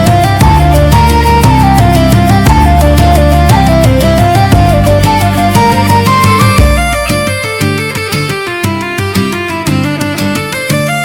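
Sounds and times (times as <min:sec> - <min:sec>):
steady bass: 0:00.0 - 0:07.4
melody over plucked strings: 0:00.0 - 0:11.0
regular beat: 0:00.0 - 0:11.0.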